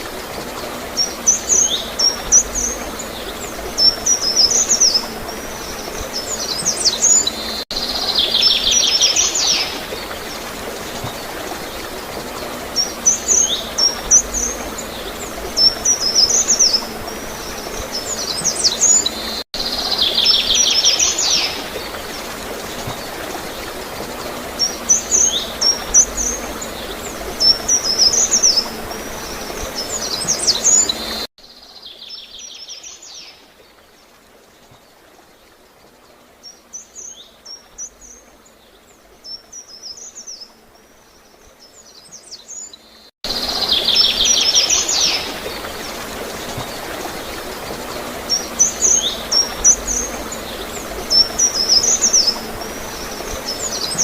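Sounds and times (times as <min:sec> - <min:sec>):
flowing water gurgling: 0:00.0 - 0:54.0
songbirds chirping and trilling: 0:00.0 - 0:54.0.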